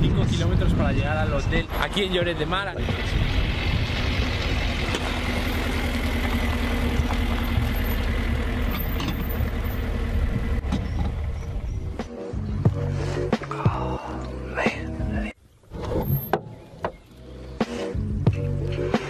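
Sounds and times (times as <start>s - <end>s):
road and wind noise: 0.0s - 19.0s
car engine running: 1.9s - 12.8s.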